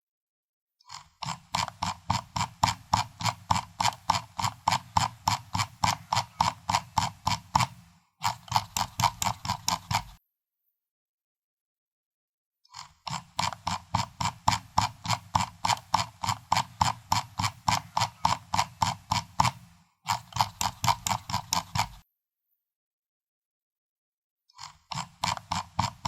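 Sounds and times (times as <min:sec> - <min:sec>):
mouse scroll wheel clicking: 0:00.9 - 0:10.2, 0:12.7 - 0:22.1, 0:24.6 - 0:26.0.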